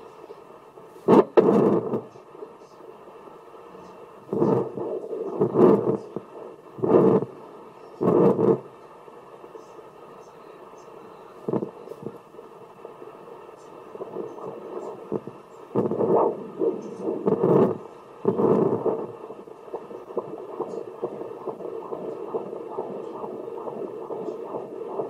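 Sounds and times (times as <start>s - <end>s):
fast fetal heartbeat pulsing: 1.0s - 2.5s, 4.2s - 8.8s, 11.4s - 25.0s
ultrasound probe whooshing and rubbing: 4.3s - 7.4s, 14.0s - 25.0s.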